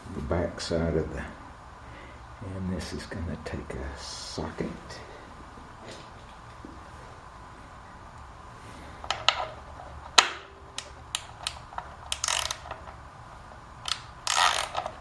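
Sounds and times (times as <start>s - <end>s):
ratchet wrench clicking: 10.8s - 13.0s, 13.8s - 15.0s.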